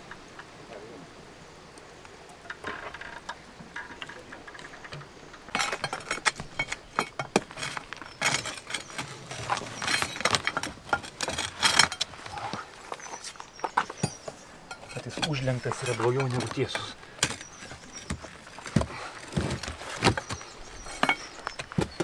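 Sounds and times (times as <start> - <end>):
stones and metal tools clinking: 3.8 - 22.0.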